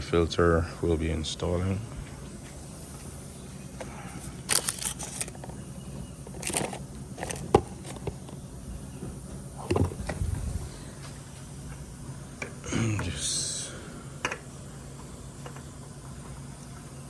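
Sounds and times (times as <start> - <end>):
low hum: 0.0 - 17.0
tools and parts clicking and rustling: 4.5 - 5.6, 6.2 - 8.4.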